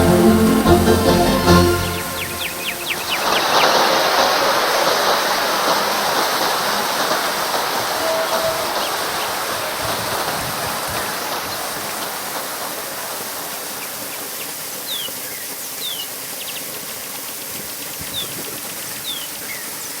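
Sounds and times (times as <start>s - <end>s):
high downward-sliding chirps: 0.0s - 3.8s
waterfall rushing: 0.0s - 17.0s.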